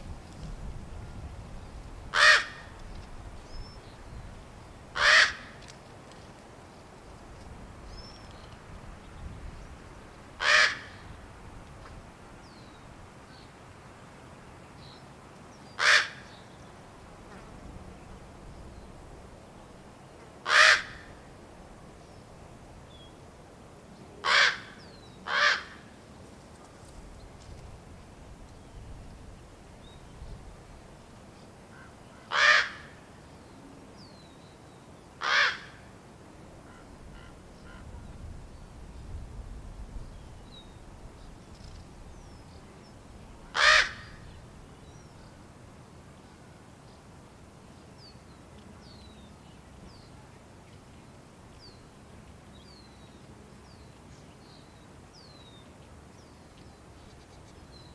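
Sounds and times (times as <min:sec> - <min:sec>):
raven fledglings begging calls: 0:02.1 - 0:02.8, 0:04.9 - 0:05.6, 0:10.3 - 0:11.2, 0:15.6 - 0:16.6, 0:20.4 - 0:21.3, 0:24.2 - 0:26.0, 0:31.7 - 0:33.1, 0:35.2 - 0:35.9, 0:36.6 - 0:38.2, 0:43.4 - 0:45.2.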